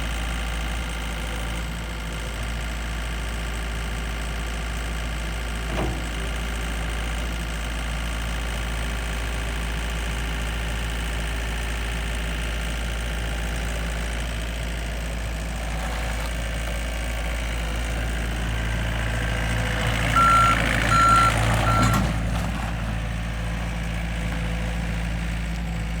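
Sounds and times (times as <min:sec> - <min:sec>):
diesel engine running: 0:00.0 - 0:26.0
backup alarm beeps: 0:20.1 - 0:22.1.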